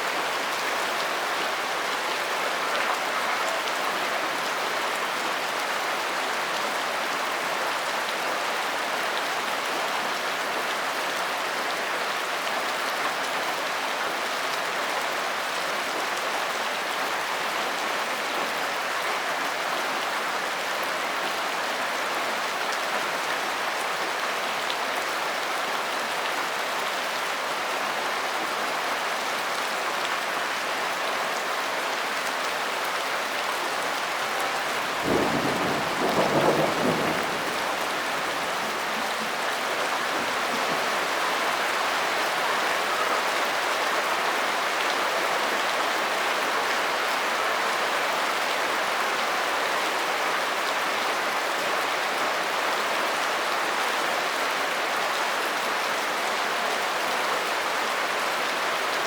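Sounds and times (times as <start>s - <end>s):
heavy rain pattering: 32.0s - 49.7s.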